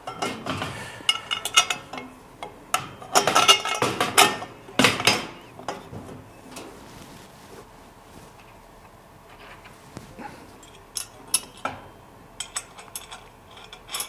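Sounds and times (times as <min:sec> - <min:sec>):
metal bolts and washers clinking: 0:00.0 - 0:05.9, 0:10.6 - 0:14.0.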